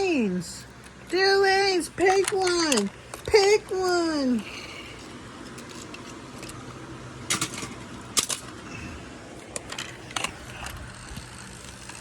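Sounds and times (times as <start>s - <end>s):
sharp clicks and rattles: 0.8s - 4.0s, 7.2s - 8.6s, 9.4s - 12.0s.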